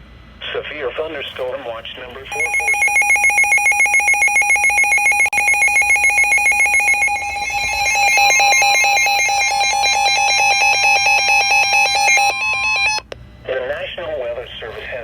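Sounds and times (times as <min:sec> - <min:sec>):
electronic emergency alert tone: 0:02.3 - 0:13.1.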